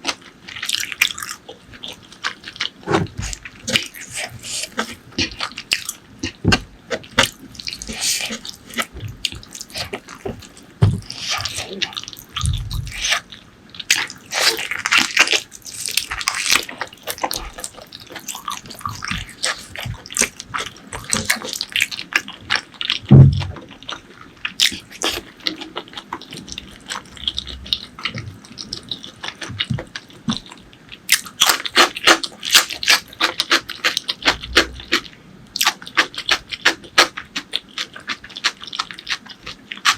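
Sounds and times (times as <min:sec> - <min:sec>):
wet chewing and lip-smacking: 0:00.0 - 0:39.9
low thump: 0:23.1 - 0:23.5.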